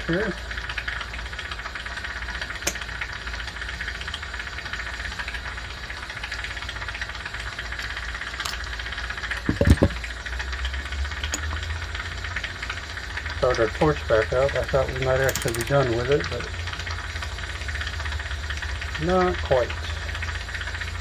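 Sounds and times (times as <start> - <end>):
knock on bench: 9.4 - 10.0
light handling clicks: 15.2 - 15.9.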